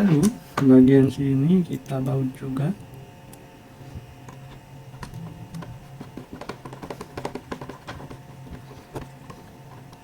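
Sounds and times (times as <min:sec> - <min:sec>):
screwdriver clicks and taps on plastic: 0:05.0 - 0:08.2.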